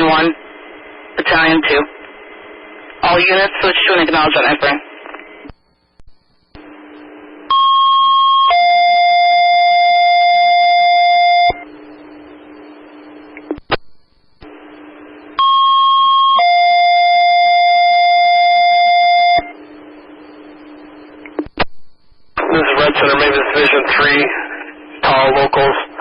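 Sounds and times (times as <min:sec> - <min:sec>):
radio hiss: 0:00.0 - 0:05.6, 0:22.3 - 0:26.0.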